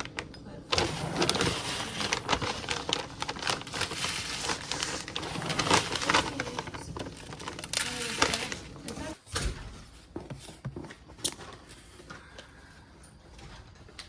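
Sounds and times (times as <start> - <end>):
plastic bag crinkling: 0.0 - 9.2.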